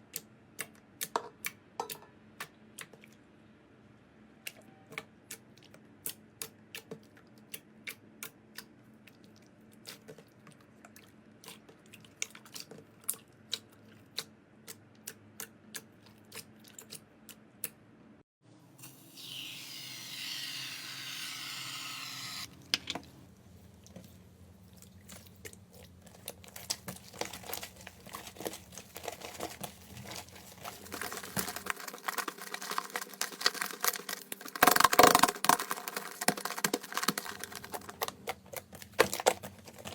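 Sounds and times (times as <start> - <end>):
slime crackling: 24.8 - 39.9
slime crinkling hiss: 25.0 - 39.8.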